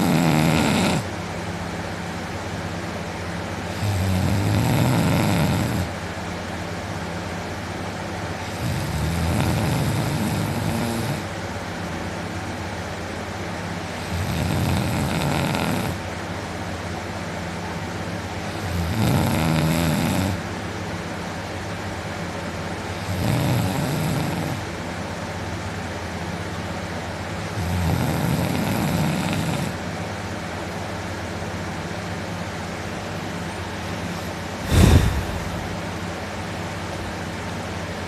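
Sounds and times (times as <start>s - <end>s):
man snoring: 0.0s - 1.1s, 3.7s - 5.9s, 8.4s - 11.3s, 14.0s - 16.0s, 18.5s - 20.4s, 23.0s - 24.6s, 27.6s - 29.8s, 34.6s - 35.7s
low hum: 34.6s - 36.4s.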